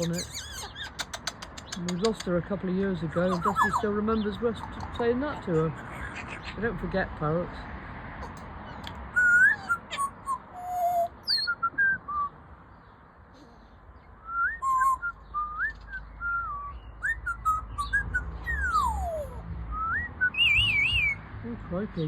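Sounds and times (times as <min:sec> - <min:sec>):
parrot whistling: 0:00.0 - 0:01.1, 0:08.7 - 0:12.3, 0:14.2 - 0:21.2.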